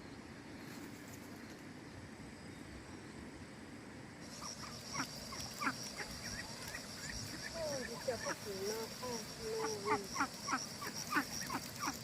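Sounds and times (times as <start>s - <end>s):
insect pulsing buzz: 4.2s - 12.0s.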